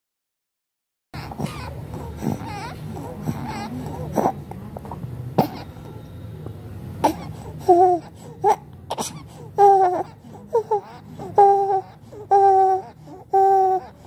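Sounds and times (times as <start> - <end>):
child coughing: 1.2 - 2.4, 5.4 - 5.8, 8.5 - 9.2
child whimpering: 1.2 - 4.3.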